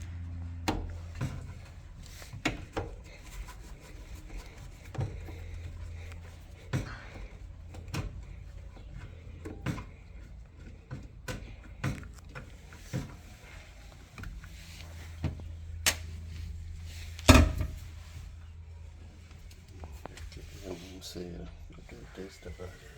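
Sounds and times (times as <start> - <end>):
low steady hum: 0.0 - 22.9
knocks and clatters of machine parts: 0.2 - 14.5, 17.1 - 18.2.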